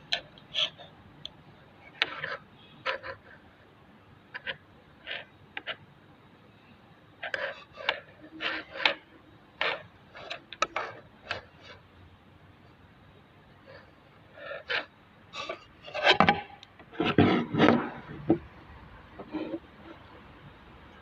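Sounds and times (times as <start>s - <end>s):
scraping and rubbing strokes: 7.2s - 9.0s, 13.7s - 18.1s.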